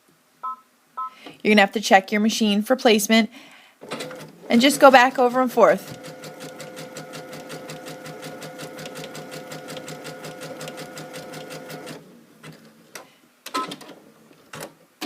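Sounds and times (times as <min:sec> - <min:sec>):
sewing machine running: 0:03.8 - 0:12.0.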